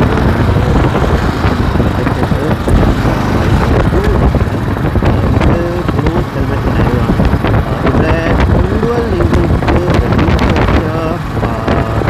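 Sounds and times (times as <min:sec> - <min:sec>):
road noise: 0:00.0 - 0:12.0
wind rush: 0:00.0 - 0:12.0.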